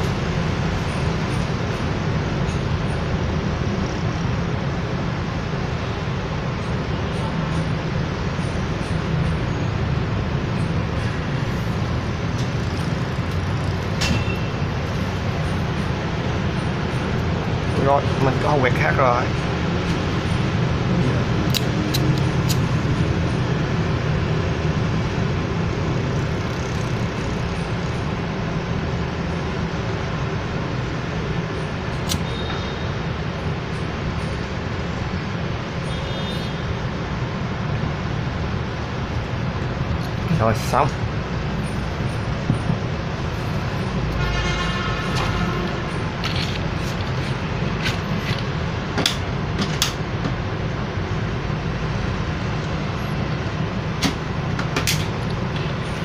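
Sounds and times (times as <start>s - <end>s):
road traffic rumble: 0.0s - 56.0s.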